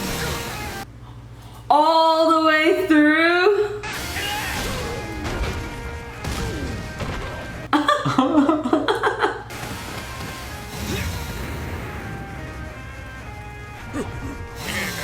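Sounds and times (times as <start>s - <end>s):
quiet background music: 1.7s - 15.0s
harsh fight sound effects: 4.0s - 7.7s, 9.5s - 13.1s.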